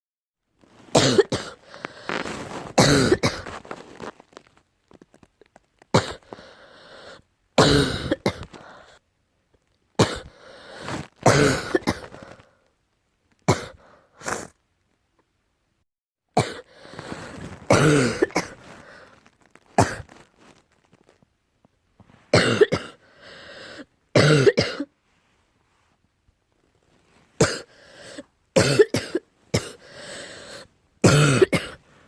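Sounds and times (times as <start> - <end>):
deep coughing: 1.0 - 3.6, 6.0 - 6.5, 7.6 - 8.6, 10.0 - 12.3, 13.5 - 14.5, 16.4 - 17.1, 17.7 - 19.0, 19.8 - 20.1, 22.4 - 23.0, 24.2 - 24.9, 27.4 - 27.7, 28.6 - 31.8.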